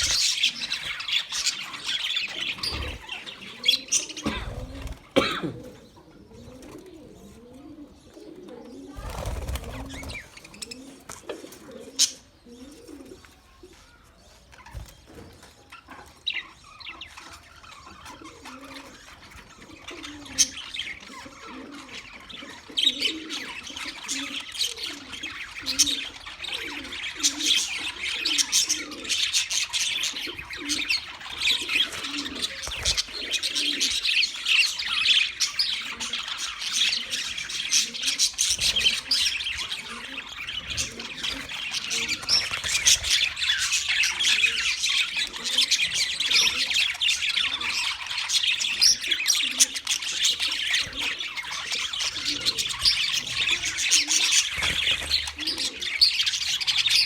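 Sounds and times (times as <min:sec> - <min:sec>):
budgerigars chattering: 0:00.0 - 0:06.5, 0:16.3 - 0:57.0.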